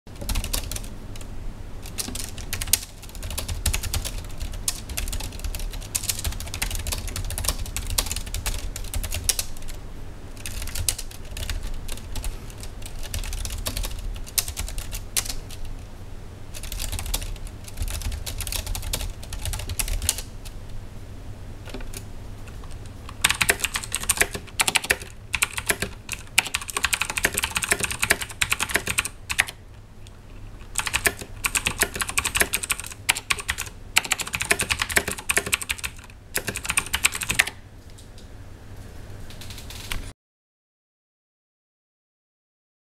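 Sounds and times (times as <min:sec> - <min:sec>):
fast typing on keyboard: 0:00.1 - 0:09.8, 0:10.4 - 0:15.7, 0:16.6 - 0:20.6, 0:21.7 - 0:29.6, 0:30.6 - 0:37.6.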